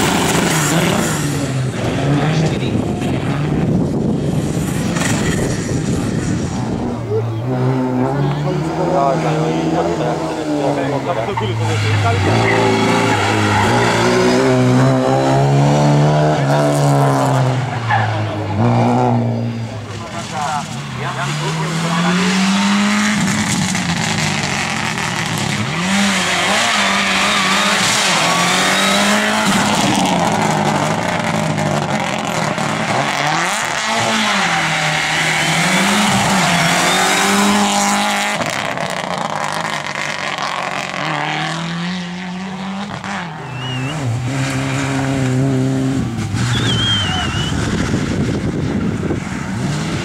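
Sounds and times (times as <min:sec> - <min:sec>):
rally car engine revving: 0:00.0 - 0:50.0
tyre squeals: 0:11.2 - 0:15.4, 0:24.8 - 0:31.0, 0:34.0 - 0:37.8, 0:43.3 - 0:45.1, 0:46.2 - 0:47.8.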